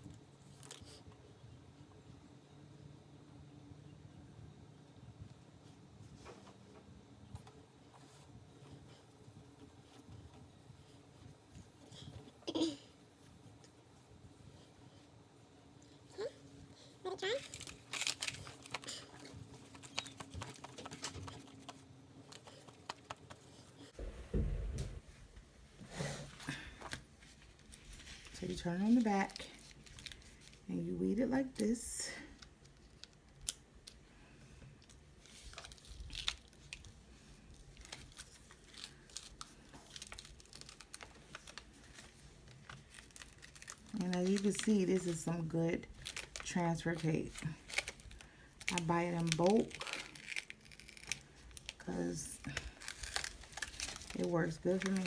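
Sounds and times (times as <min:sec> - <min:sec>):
vinyl tape peeling crackle: 0:00.0 - 0:01.1, 0:17.1 - 0:23.9, 0:26.5 - 0:30.6, 0:32.3 - 0:34.0, 0:34.8 - 0:55.0
low thump: 0:24.0 - 0:25.0.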